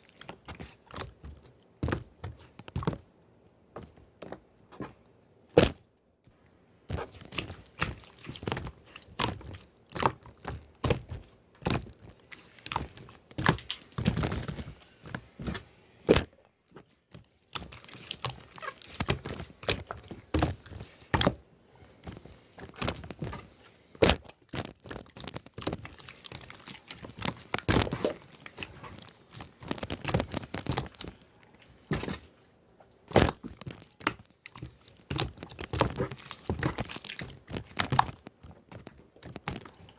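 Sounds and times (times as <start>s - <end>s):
slime squished by hand: 6.9s - 16.3s, 17.1s - 21.4s, 22.0s - 32.3s, 33.0s - 39.9s.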